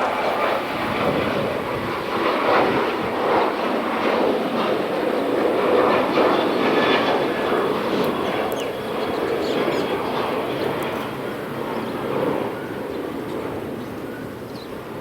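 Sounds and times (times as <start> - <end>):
jet engines roaring: 0.0 - 15.0.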